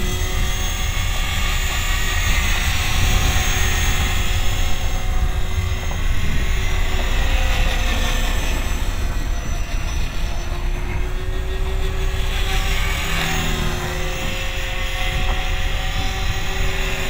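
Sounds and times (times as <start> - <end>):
model helicopter in flight: 0.0 - 17.0.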